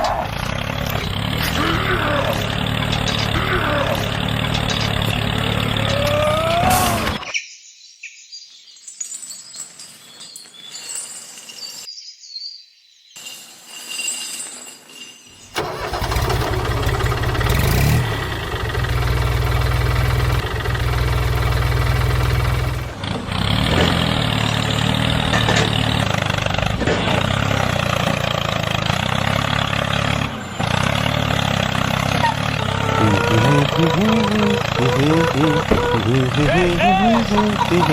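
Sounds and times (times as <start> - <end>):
engine running: 0.0 - 7.3, 15.5 - 37.9.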